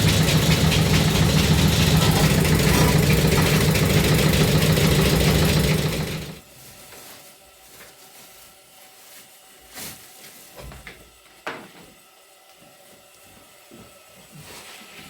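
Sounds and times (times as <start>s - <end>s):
knocks and clicks: 0.0s - 6.1s.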